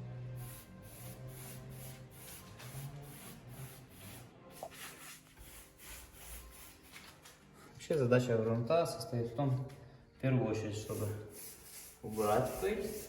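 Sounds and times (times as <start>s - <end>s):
brush rubbing on plaster: 1.0s - 6.9s, 10.9s - 13.0s.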